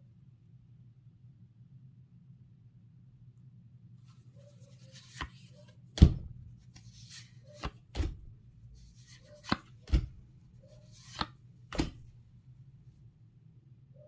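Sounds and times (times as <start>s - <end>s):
cards brushing and sliding: 4.1s - 12.2s
sharp taps of cards on table: 6.0s - 8.4s, 9.0s - 10.4s, 11.0s - 12.2s.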